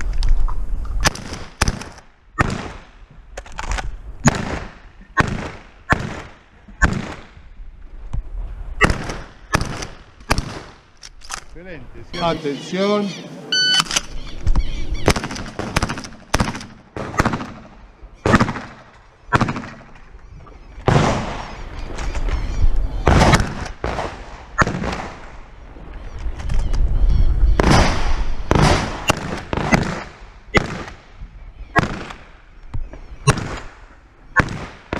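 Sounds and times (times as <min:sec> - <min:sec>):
shotgun shots echoing: 0:01.1 - 0:02.9, 0:04.2 - 0:07.4, 0:08.8 - 0:11.0, 0:15.0 - 0:20.0, 0:20.9 - 0:21.8, 0:23.1 - 0:25.4, 0:27.6 - 0:31.1, 0:31.7 - 0:32.4, 0:33.2 - 0:33.8, 0:34.4 - 0:34.9.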